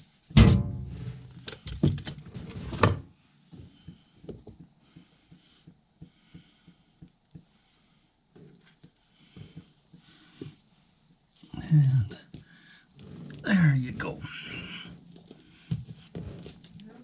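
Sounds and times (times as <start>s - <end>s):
handling clatter and knocks: 0.3s - 4.7s, 12.2s - 17.0s.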